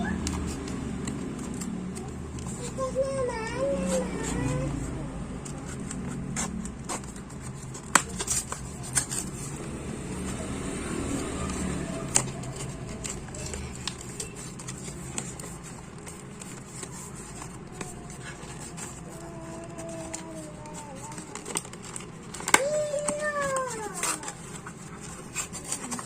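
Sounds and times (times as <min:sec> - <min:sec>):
small parts clicking and tapping: 0:11.4 - 0:26.0.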